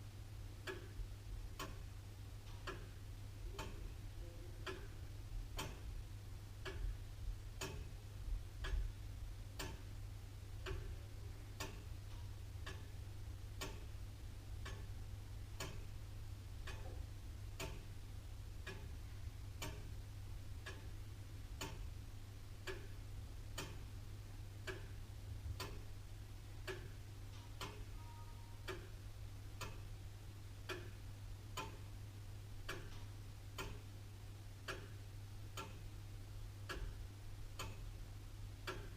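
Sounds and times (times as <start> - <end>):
low steady hum: 0.0 - 38.9
clock ticking: 0.4 - 38.9.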